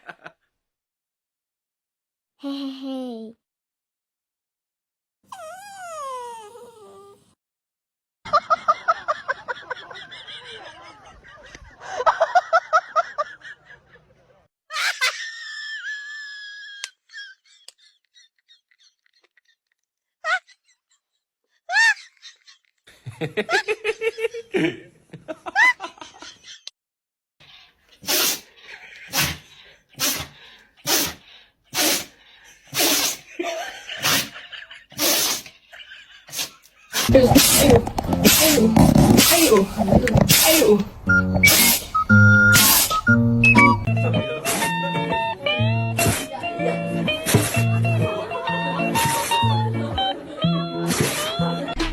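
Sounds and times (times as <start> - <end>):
breathy laughing: 8.3 - 26.7, 32.5 - 35.0
high-pitched laughter: 14.7 - 24.5, 25.4 - 26.7
dog sneezing: 28.0 - 28.5, 29.1 - 33.3, 34.0 - 34.4, 35.0 - 35.5, 36.3 - 43.8.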